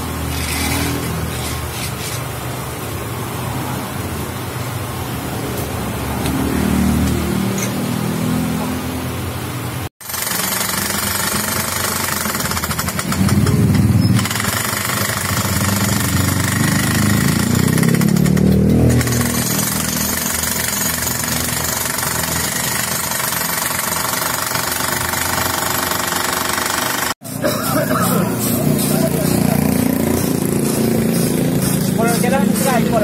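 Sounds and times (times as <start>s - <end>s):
machinery running with rattling beat: 10.0s - 33.0s.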